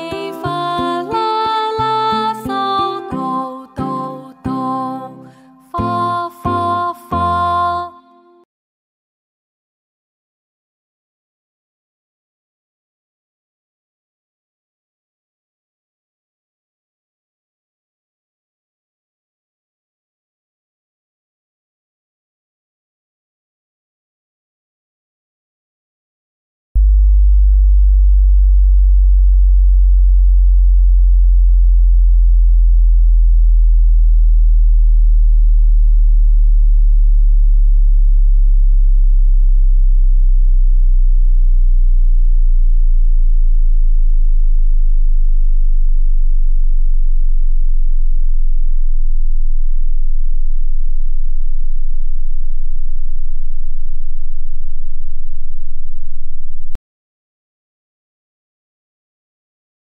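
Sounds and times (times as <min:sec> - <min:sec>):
deep sine bass tone: 0:26.8 - 0:56.8.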